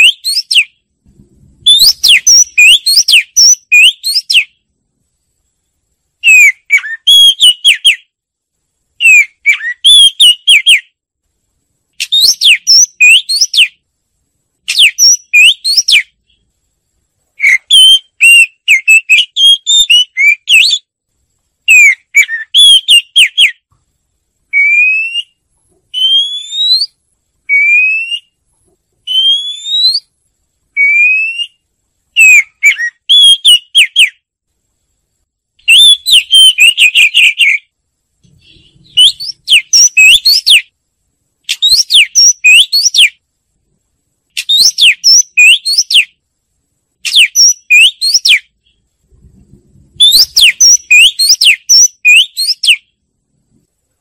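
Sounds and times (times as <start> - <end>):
bird singing whistles and trills: 0.0 - 0.8, 1.6 - 4.6, 6.2 - 8.1, 9.0 - 10.9, 12.0 - 13.8, 14.7 - 16.4, 17.4 - 20.9, 21.7 - 23.6, 24.5 - 28.4, 29.0 - 30.1, 30.8 - 31.6, 32.2 - 34.2, 35.6 - 37.7, 38.3 - 40.7, 41.5 - 43.2, 44.4 - 46.2, 47.0 - 48.8, 50.0 - 52.9.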